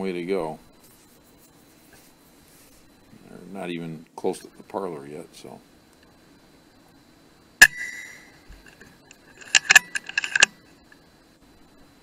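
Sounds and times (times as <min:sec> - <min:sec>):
air rifle shot: 0:07.6 - 0:08.3
metallic clicks and rattles: 0:09.4 - 0:10.5.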